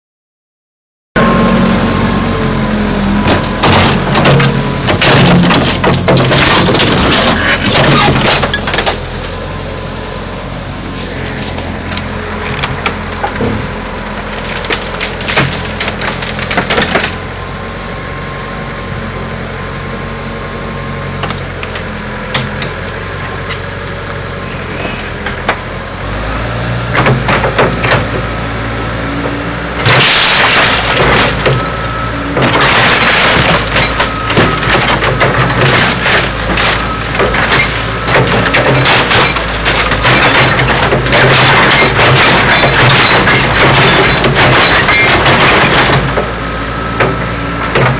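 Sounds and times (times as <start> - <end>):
diesel engine running: 1.2 - 47.9
metal crunching and cracking: 3.1 - 9.5, 11.0 - 17.4, 26.9 - 28.3, 29.2 - 46.4, 47.0 - 47.9
glass breaking: 3.6 - 9.0, 29.8 - 31.8, 32.4 - 46.1.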